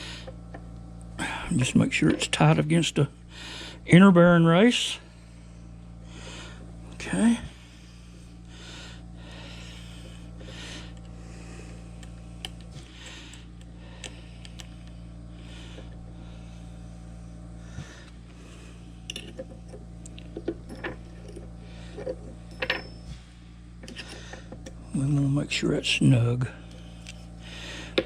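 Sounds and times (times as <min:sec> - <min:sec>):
low hum: 0:00.0 - 0:28.0
metallic clicks of steel parts: 0:19.0 - 0:23.2, 0:23.8 - 0:24.8.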